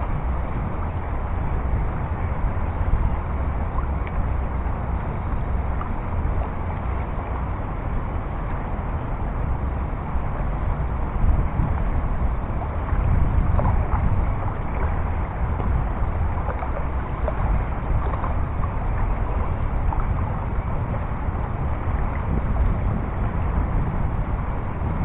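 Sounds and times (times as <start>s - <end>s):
wind buffeting microphone: 0.0s - 25.0s
river water rushing: 10.0s - 24.8s.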